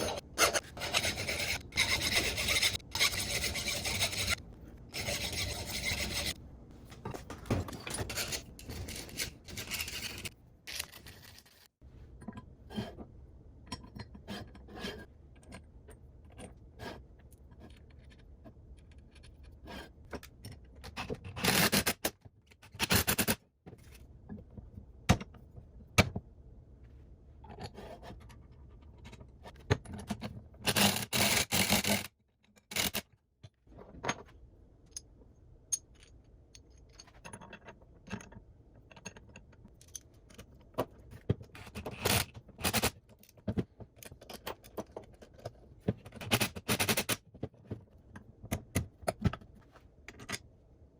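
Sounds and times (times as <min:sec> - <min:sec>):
metal scraping and rubbing: 0:00.0 - 0:06.4, 0:07.1 - 0:11.6.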